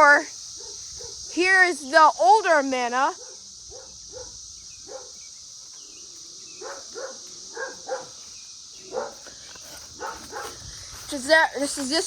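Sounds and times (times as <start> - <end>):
steady high hiss: 0.0 - 12.0
dog barking: 0.6 - 1.2, 3.1 - 5.2, 6.6 - 8.2, 8.8 - 9.3, 9.9 - 10.6.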